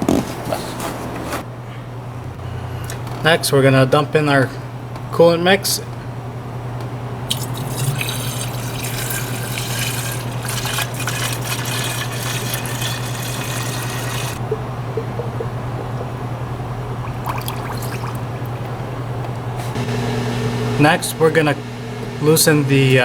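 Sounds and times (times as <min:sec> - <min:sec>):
liquid pouring and gurgling: 0:07.3 - 0:18.6.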